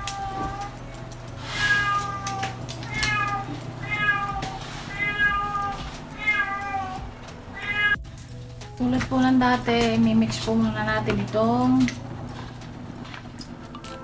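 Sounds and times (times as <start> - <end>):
cat meowing: 0.0 - 8.0.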